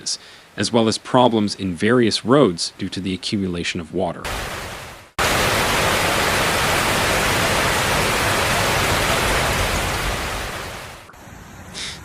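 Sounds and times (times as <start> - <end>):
rushing water in a downpour: 4.2 - 11.1.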